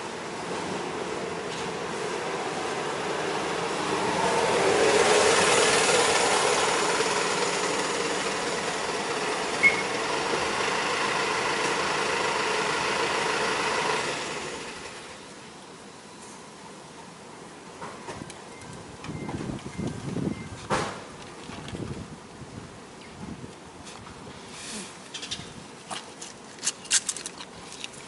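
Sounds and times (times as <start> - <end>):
motor vehicle passing: 2.0 - 15.2
short high chirp: 9.6 - 9.9.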